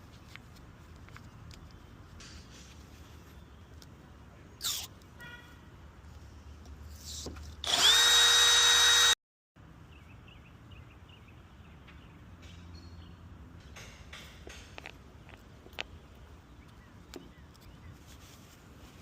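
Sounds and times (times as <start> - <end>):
power tool motor spinning: 7.6 - 9.2.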